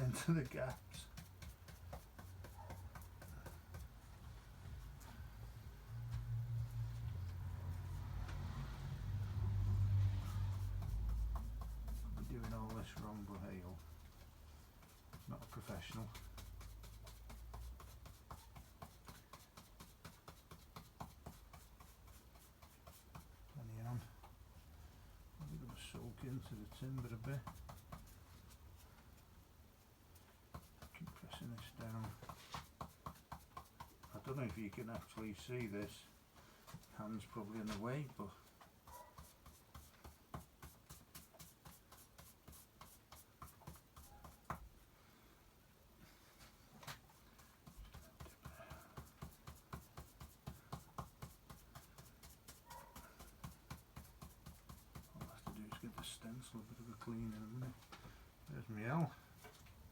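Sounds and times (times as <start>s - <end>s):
paintbrush tapping on wood: 0.1s - 4.1s, 10.4s - 13.9s, 14.8s - 23.4s, 30.2s - 36.0s, 47.4s - 58.2s.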